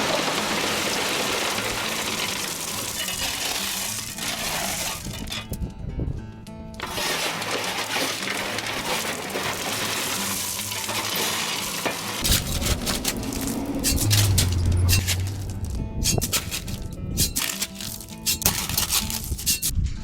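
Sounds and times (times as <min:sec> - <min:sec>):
rocks pouring from truck bed: 0:00.0 - 0:05.6, 0:06.8 - 0:19.4
low hum: 0:12.3 - 0:17.2.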